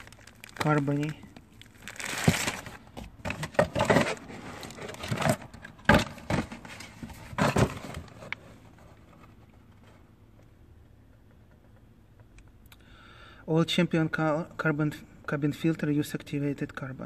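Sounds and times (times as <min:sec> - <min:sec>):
plastic wrapping rustling and crinkling: 0:00.0 - 0:05.6.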